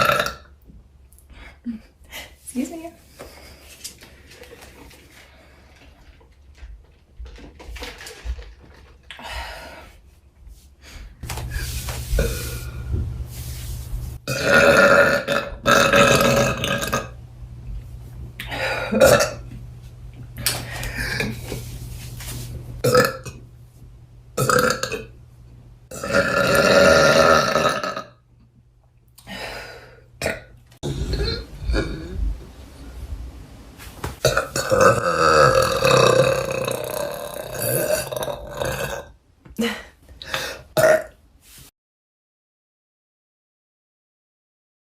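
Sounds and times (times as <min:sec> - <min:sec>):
woman burping: 0:00.0 - 0:00.5, 0:14.3 - 0:17.2, 0:18.4 - 0:19.5, 0:20.8 - 0:21.4, 0:22.8 - 0:23.4, 0:24.4 - 0:25.1, 0:25.9 - 0:28.2, 0:30.2 - 0:32.2, 0:34.2 - 0:41.2.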